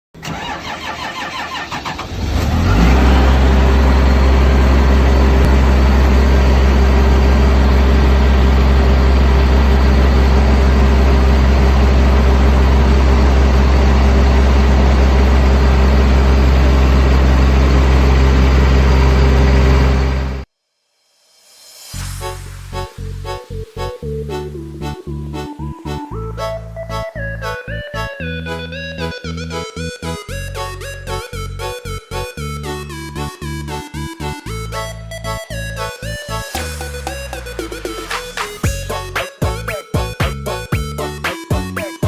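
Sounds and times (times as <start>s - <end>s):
engine cranking: 0.2s - 20.3s
engine idling loudly: 1.2s - 20.4s.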